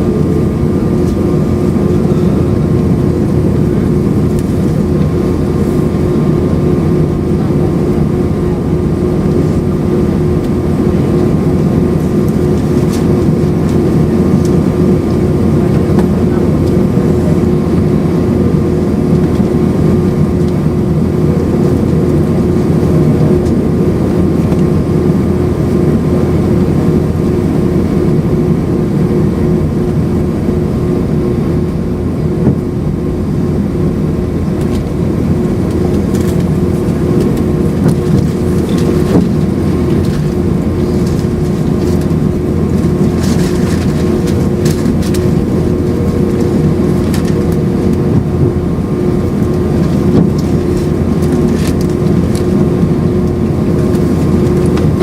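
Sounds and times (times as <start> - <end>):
air-conditioning hiss: 0.0 - 55.0
jet engine hum: 0.0 - 55.0.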